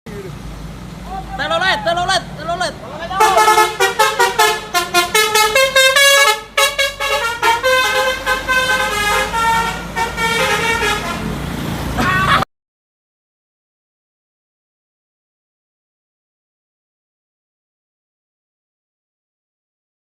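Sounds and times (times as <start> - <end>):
musical bus horn melody: 3.1 - 11.5.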